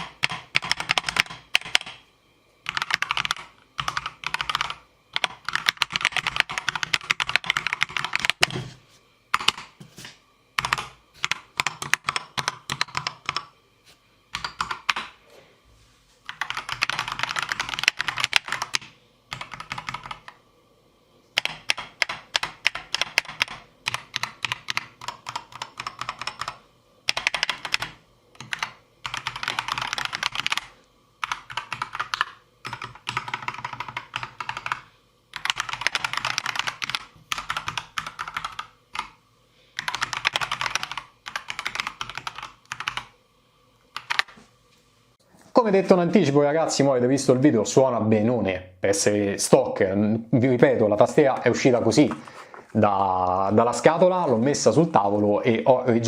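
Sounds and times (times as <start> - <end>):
mechanical keyboard typing: 0.0 - 2.0, 2.6 - 8.6, 9.3 - 9.8, 10.6 - 13.5, 14.3 - 15.2, 16.3 - 20.4, 21.4 - 39.2, 39.8 - 43.1, 43.9 - 44.4.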